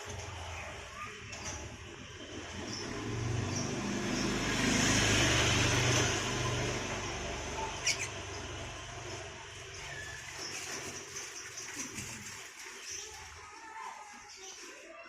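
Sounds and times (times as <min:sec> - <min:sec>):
vehicle passing by: 0:01.7 - 0:11.3.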